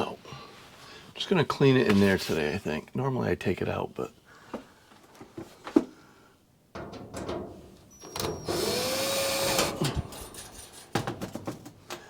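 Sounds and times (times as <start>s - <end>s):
knocks from handling metal: 6.8s - 8.4s, 9.6s - 12.0s
power drill whining: 7.9s - 10.6s.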